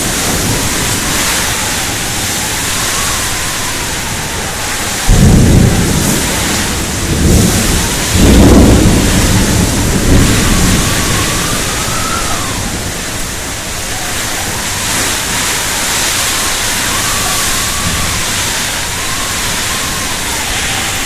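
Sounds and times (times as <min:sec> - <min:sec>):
heavy rain hissing: 0:00.0 - 0:21.0.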